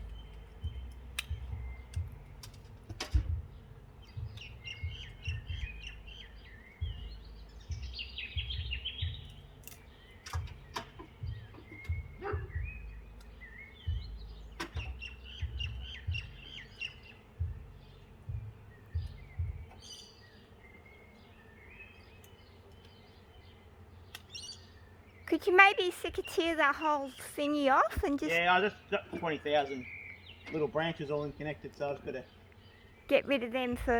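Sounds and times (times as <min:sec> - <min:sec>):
birds chirping: 0:00.0 - 0:33.9
sharp clicks: 0:00.9 - 0:03.3.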